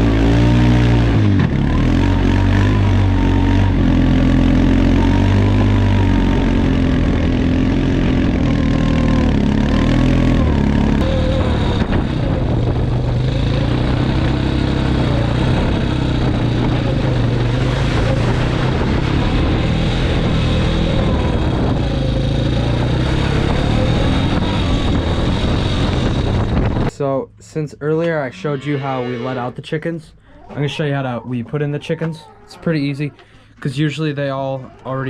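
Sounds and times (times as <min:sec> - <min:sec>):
quad bike engine running: 0:00.0 - 0:26.9.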